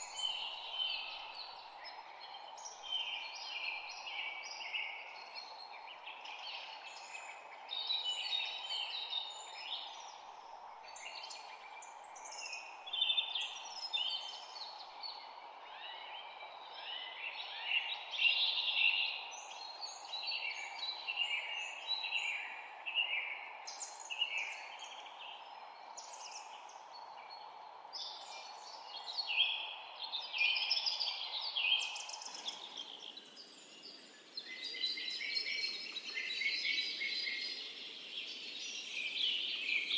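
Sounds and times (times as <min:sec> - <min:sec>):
birds chirping and trilling: 0:32.0 - 0:39.9
steady background hiss: 0:32.0 - 0:39.9.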